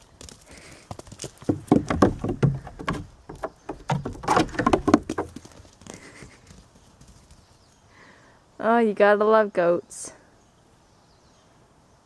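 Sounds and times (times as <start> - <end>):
goats' hooves clattering: 0.0 - 7.6.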